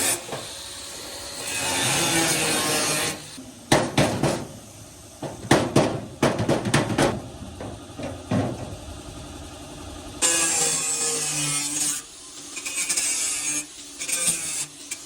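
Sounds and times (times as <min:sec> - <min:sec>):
tools knocking and clattering: 0:03.7 - 0:04.5, 0:05.2 - 0:08.8.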